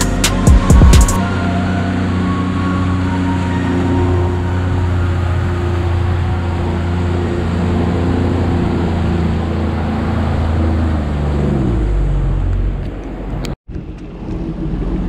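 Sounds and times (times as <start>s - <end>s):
jet ski engine slowing: 0.0s - 15.0s.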